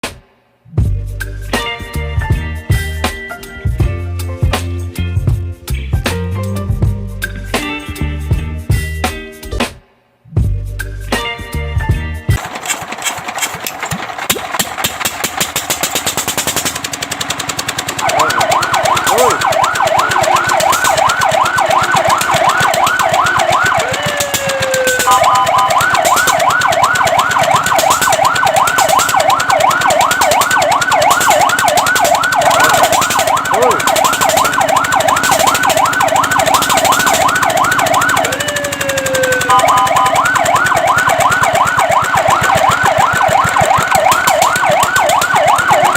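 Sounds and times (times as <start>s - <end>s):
loud rattling noise: 12.4s - 45.9s
fire truck siren yelping: 17.2s - 45.9s.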